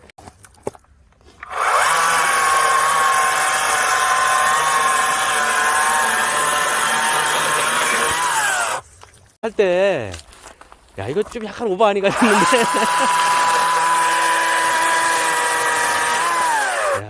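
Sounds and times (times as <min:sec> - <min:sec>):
electric chainsaw sawing wood: 0:01.4 - 0:08.8, 0:12.1 - 0:17.0.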